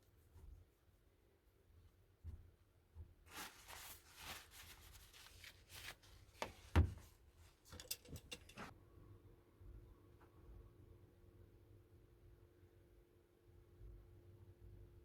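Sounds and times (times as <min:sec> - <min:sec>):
rustling: 0:03.3 - 0:07.8.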